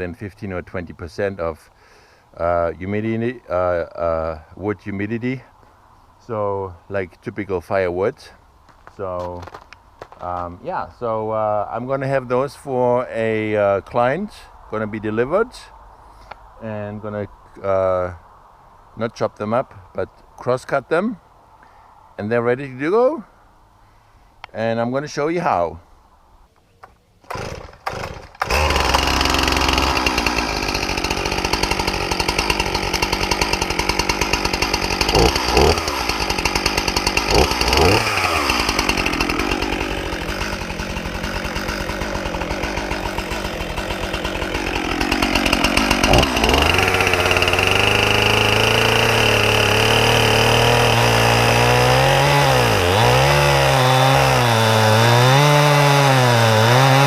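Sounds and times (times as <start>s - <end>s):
chainsaw cutting log: 9.2s - 10.4s, 27.2s - 57.0s
chainsaw running: 27.2s - 57.0s.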